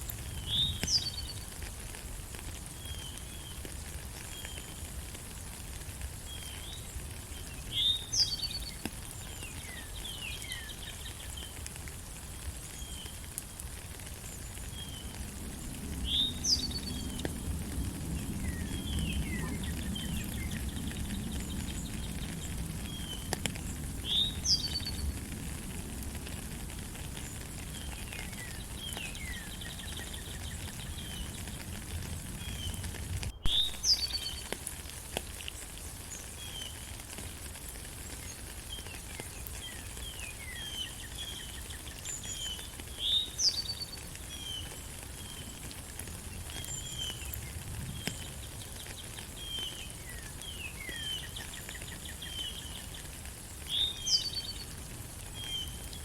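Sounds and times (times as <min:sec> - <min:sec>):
steady rain falling: 0:00.0 - 0:56.0
birds chirping: 0:16.0 - 0:25.2.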